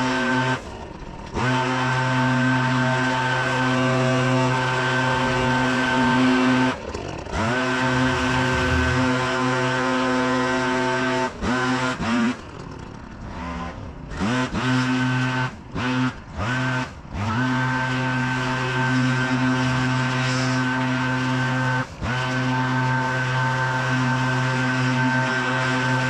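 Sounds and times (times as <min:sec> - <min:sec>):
leaf vacuum engine revving: 0:00.0 - 0:12.4, 0:13.2 - 0:26.0.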